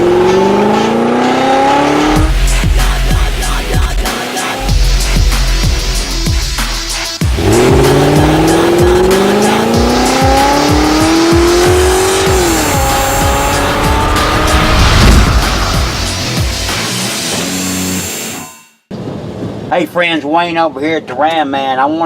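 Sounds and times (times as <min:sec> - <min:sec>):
vehicle engine accelerating: 0:00.0 - 0:02.8, 0:04.7 - 0:18.0
music with a steady beat: 0:00.0 - 0:18.2.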